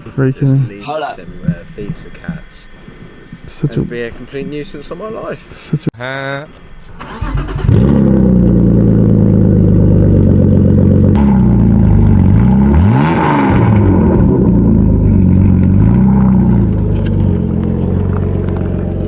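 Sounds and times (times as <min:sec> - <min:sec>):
car engine revving: 0:06.8 - 0:19.0.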